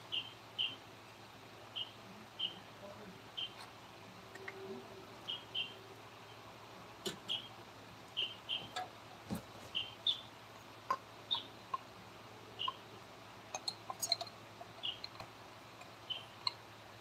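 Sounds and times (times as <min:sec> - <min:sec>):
small bird chirping: 0:00.0 - 0:00.8, 0:01.7 - 0:02.6, 0:03.4 - 0:03.7, 0:04.3 - 0:06.5, 0:07.2 - 0:07.5, 0:08.1 - 0:08.9, 0:09.7 - 0:10.3, 0:10.9 - 0:11.9, 0:12.5 - 0:13.0, 0:13.6 - 0:16.6.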